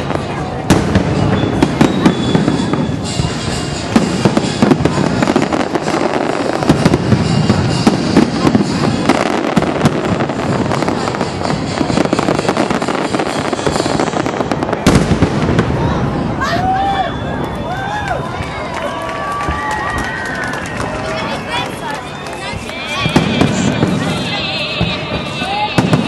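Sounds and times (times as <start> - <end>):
fireworks booms: 0.0 - 16.7, 23.0 - 26.0
fireworks bangs and crackling: 0.0 - 26.0.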